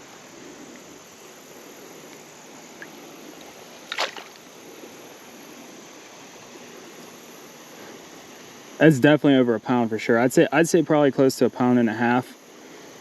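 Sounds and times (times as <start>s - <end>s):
creek water flowing: 0.0s - 13.0s
sharp water splash: 3.8s - 4.5s.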